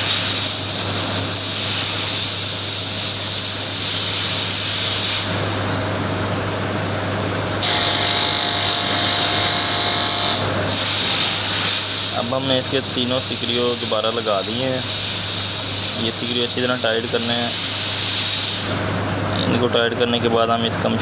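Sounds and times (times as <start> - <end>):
steady hum and hiss: 0.0 - 21.0
powered screwdriver motor whine: 6.5 - 12.3
screws being driven: 7.6 - 15.1.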